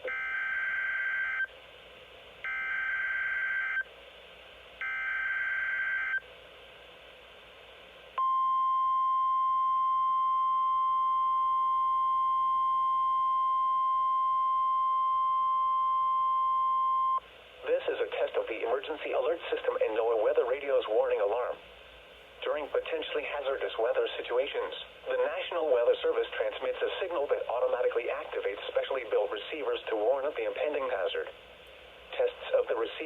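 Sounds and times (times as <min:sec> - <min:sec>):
steady warning alarm tone: 0:00.0 - 0:01.5, 0:02.4 - 0:03.8, 0:04.8 - 0:06.2
faint radio hiss: 0:01.5 - 0:02.5, 0:03.8 - 0:04.9, 0:05.7 - 0:33.0.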